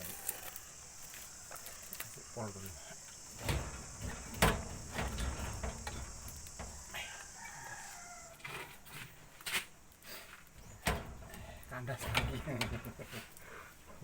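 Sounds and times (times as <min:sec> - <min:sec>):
high insect buzz: 0:00.0 - 0:09.0
rooster crowing: 0:00.0 - 0:09.0
metal knocks and clunks: 0:03.0 - 0:07.4, 0:10.6 - 0:13.2.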